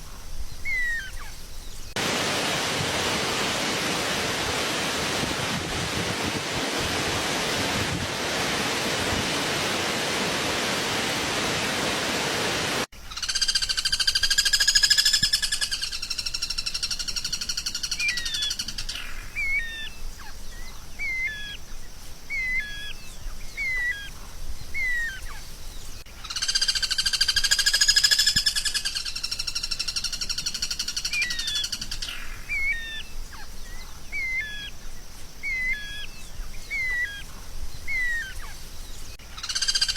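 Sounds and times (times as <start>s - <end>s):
steady hiss: 0.0s - 13.1s, 13.7s - 39.9s
songbird trilling and chirping: 0.1s - 2.0s, 13.1s - 39.9s.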